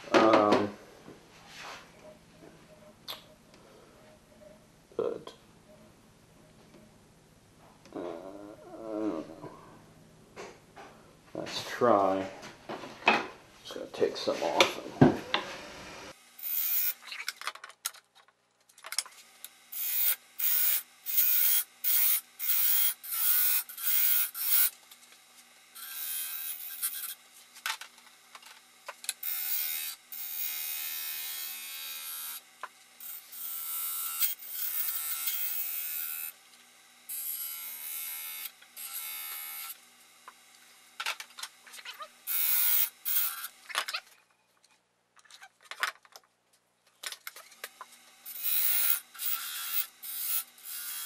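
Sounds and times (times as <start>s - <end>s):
turning tool cutting wood: 19.2s - 44.2s, 47.3s - 51.0s.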